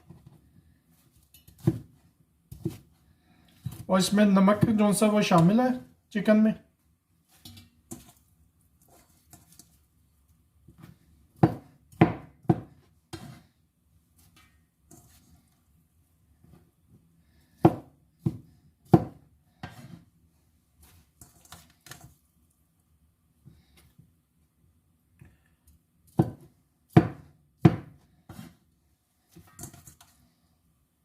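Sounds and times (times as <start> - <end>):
knife chopping on board: 11.4 - 13.4, 17.6 - 20.0, 26.1 - 28.5.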